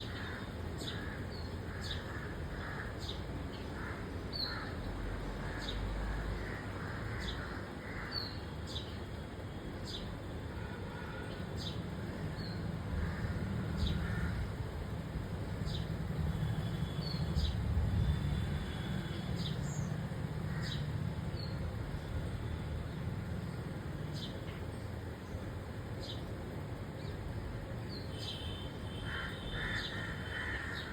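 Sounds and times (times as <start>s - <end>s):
small birds chirping: 22.9s - 30.9s.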